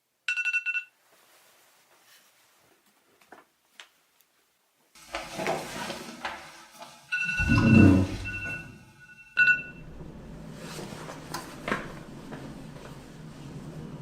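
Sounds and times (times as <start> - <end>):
phone alarm beeping: 7.2 - 9.8.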